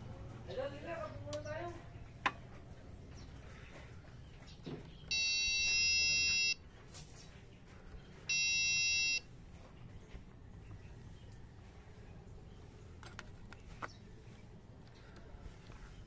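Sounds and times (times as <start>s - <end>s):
electronic buzzer beeps: 5.1s - 6.6s, 8.3s - 9.2s.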